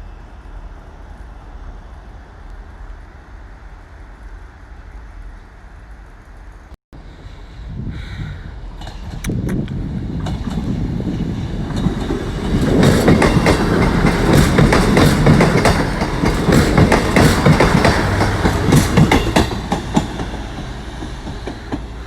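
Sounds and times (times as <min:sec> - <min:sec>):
train wheels clattering over rail joints: 0:08.7 - 0:22.0.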